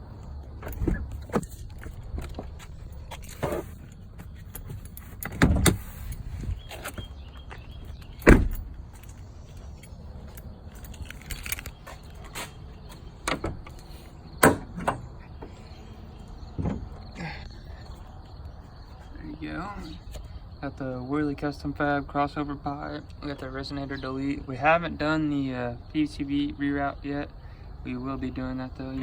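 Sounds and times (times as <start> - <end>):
hood latch clicks and knocks: 4.2 - 5.9, 13.2 - 15.5.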